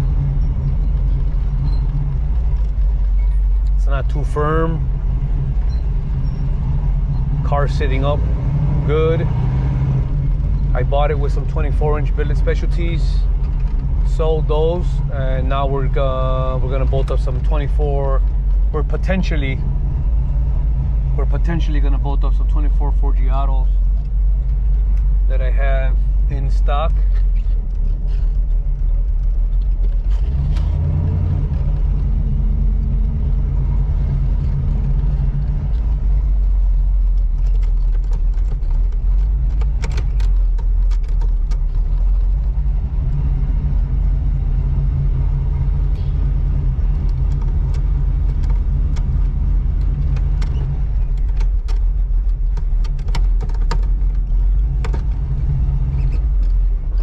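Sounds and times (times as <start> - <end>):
car engine droning: 0.0 - 57.0
clicks and rattles: 36.9 - 43.2, 46.8 - 57.0.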